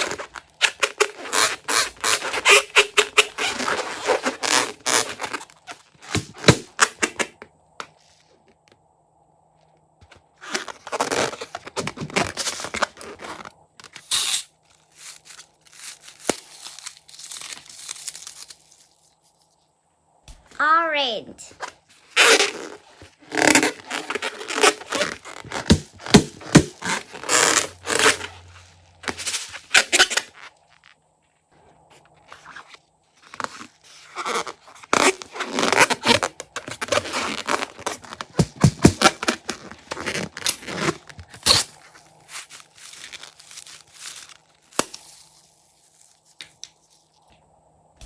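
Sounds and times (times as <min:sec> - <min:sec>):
crunchy slime crackling: 0:14.2 - 0:19.3, 0:32.4 - 0:46.9.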